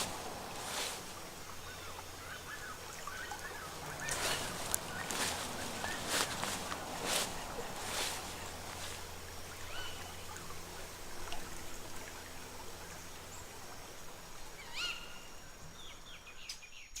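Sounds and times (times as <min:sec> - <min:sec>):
bird chirps: 0:00.0 - 0:10.3
low hum: 0:00.0 - 0:14.6
steady noisy background: 0:00.0 - 0:15.8.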